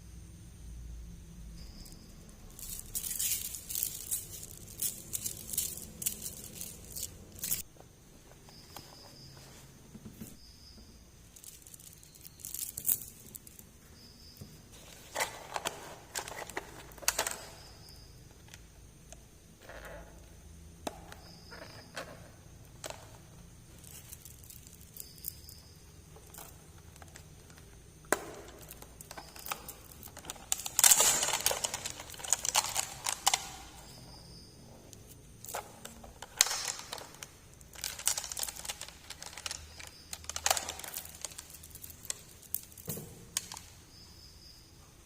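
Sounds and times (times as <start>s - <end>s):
packaging rustling: 2.5s - 7.7s, 11.3s - 13.6s, 14.7s - 17.8s, 23.7s - 34.0s, 35.0s - 43.7s.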